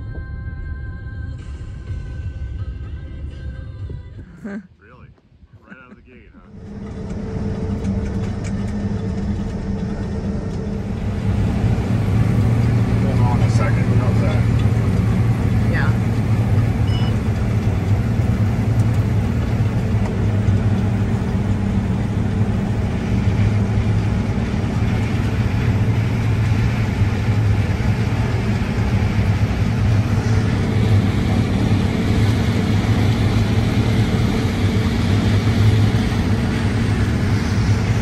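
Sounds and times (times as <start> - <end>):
combine engine drone from cab: 0.0 - 38.0.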